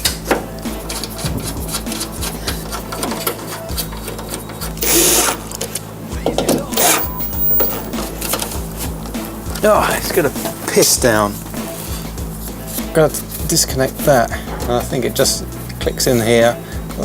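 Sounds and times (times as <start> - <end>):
power drill rattling: 4.8 - 5.4.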